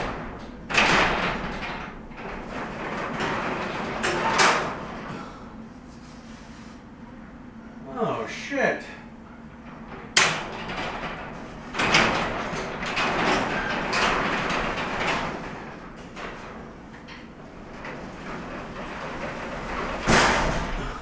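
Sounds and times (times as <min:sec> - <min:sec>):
metal garage door bang: 0:00.0 - 0:05.6, 0:09.3 - 0:21.0
garage door clattering and scraping: 0:00.0 - 0:07.5, 0:09.0 - 0:21.0.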